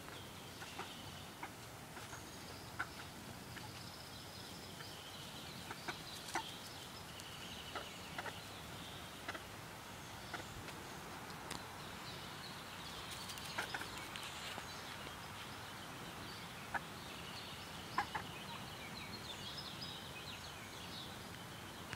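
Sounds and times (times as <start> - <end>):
hens clucking: 0.1 - 3.9, 7.6 - 8.5, 9.2 - 9.6, 10.2 - 10.8, 13.3 - 14.6, 18.0 - 18.6.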